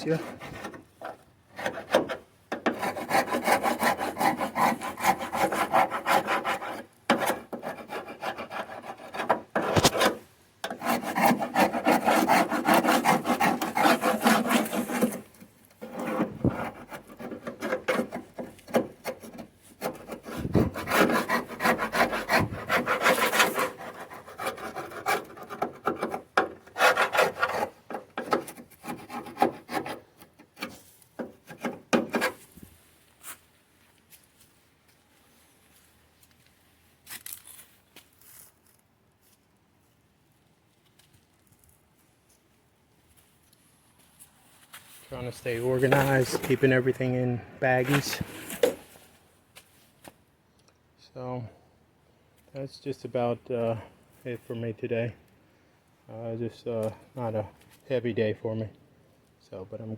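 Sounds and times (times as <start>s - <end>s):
scratchy rasping of paint rubbing: 1.6s - 30.8s, 45.3s - 46.9s.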